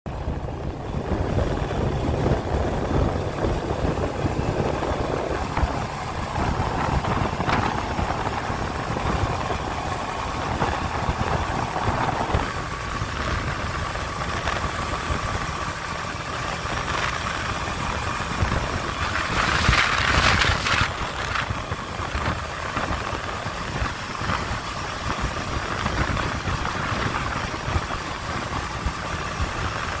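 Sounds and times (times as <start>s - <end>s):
motorcycle engine at high speed: 0.1s - 30.0s
wind rush over microphone: 0.1s - 30.0s.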